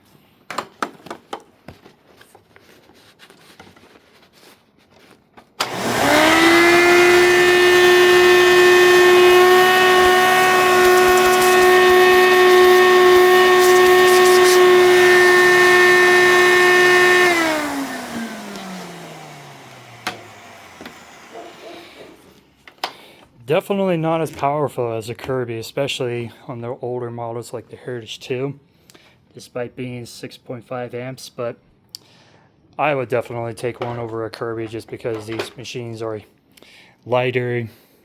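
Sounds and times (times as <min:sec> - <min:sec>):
vacuum cleaner motor whining: 0:05.6 - 0:22.4.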